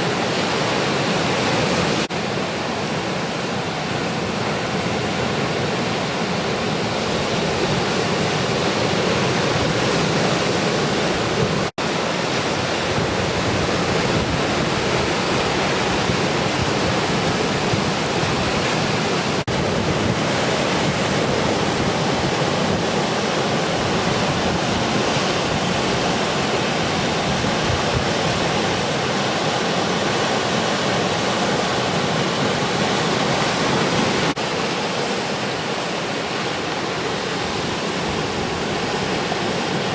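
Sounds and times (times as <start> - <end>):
wind on microphone: 0.0 - 34.4
ocean surf rushing: 0.0 - 39.9.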